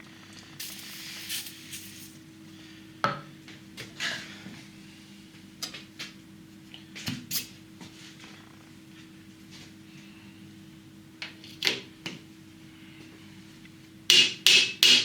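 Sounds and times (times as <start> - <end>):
aerosol spray hissing: 0.6 - 2.2.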